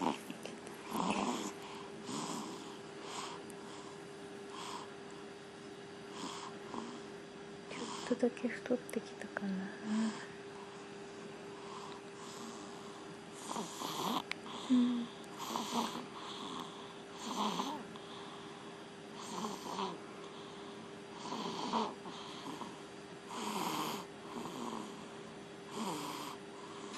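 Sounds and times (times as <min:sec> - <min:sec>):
person snoring: 0:00.0 - 0:04.9, 0:13.4 - 0:17.8, 0:19.2 - 0:20.0, 0:21.1 - 0:25.1, 0:25.7 - 0:26.4
faint steady hum: 0:00.0 - 0:26.9.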